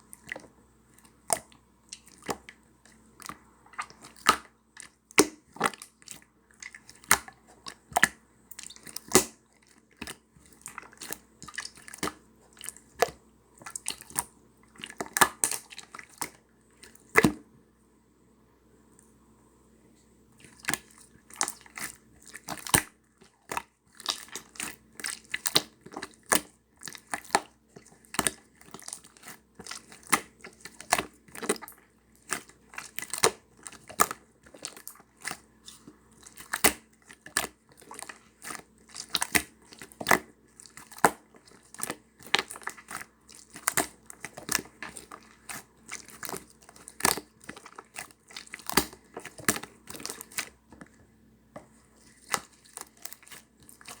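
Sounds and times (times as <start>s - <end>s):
slime crackling and clicking: 28.2s - 50.6s.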